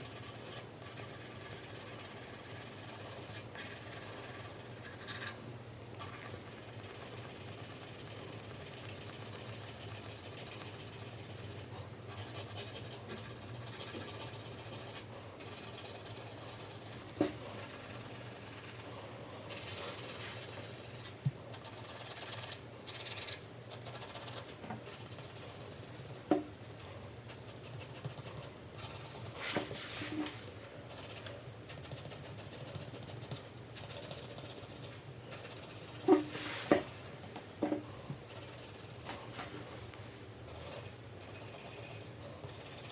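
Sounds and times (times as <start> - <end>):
pencil shading on paper: 0.0 - 5.4.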